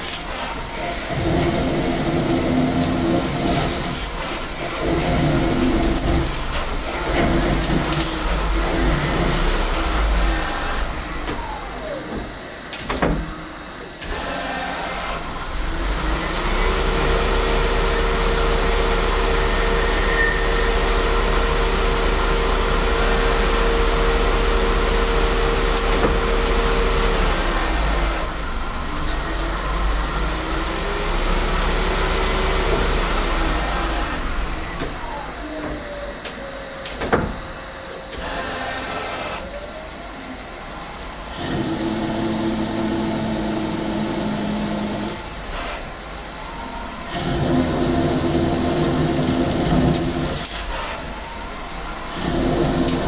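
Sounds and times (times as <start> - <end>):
metal cutting noise: 0.0 - 40.0, 41.3 - 53.0
lathe motor whine: 0.0 - 53.0.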